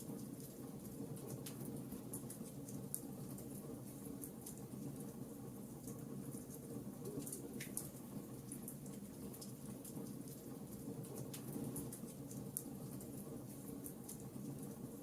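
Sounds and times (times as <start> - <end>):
fire popping and snapping: 5.8 - 14.7.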